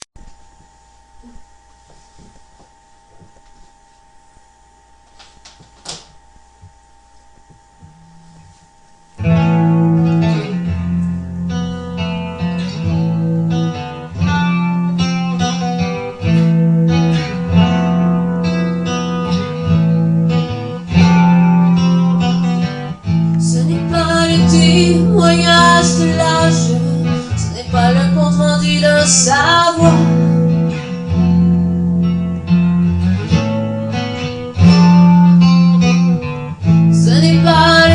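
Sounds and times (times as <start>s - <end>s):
faint hum: 0.0s - 37.9s
guitar chords: 1.2s - 37.9s
wavering melody line: 23.5s - 29.0s.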